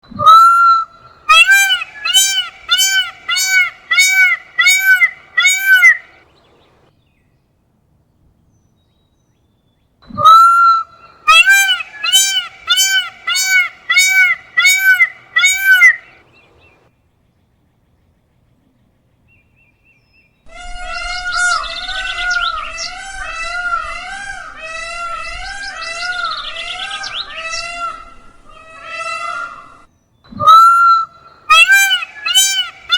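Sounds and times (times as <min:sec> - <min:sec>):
peacock calling: 0:00.2 - 0:06.8, 0:10.2 - 0:16.8, 0:20.5 - 0:32.9.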